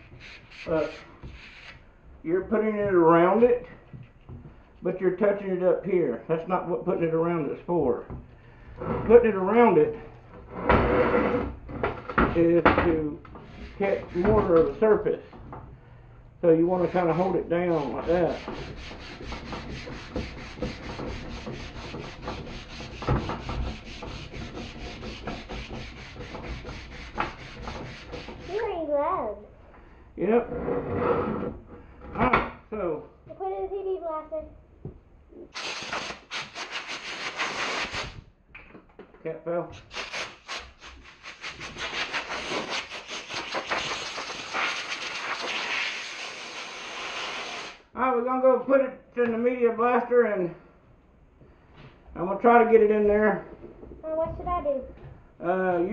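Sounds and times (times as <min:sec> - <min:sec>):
abrasive rubbing on metal: 0:00.0 - 0:01.8, 0:13.4 - 0:15.3, 0:16.6 - 0:28.7, 0:35.5 - 0:38.2, 0:39.8 - 0:47.8
hand scrubbing on metal: 0:00.0 - 0:01.8, 0:16.6 - 0:28.7, 0:39.8 - 0:47.8
knocks: 0:18.5 - 0:28.5.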